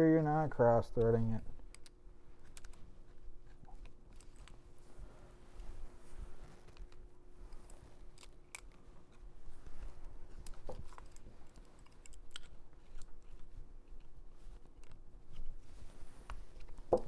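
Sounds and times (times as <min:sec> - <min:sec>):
faint steady hum: 0:00.0 - 0:17.0
small sharp clicks of reel parts: 0:01.6 - 0:02.8.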